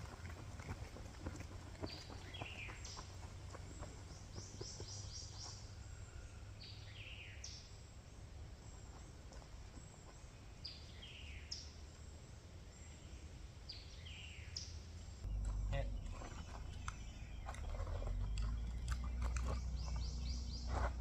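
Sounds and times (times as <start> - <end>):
songbirds chirping: 0.0 - 21.0
faint low rumble: 14.7 - 21.0.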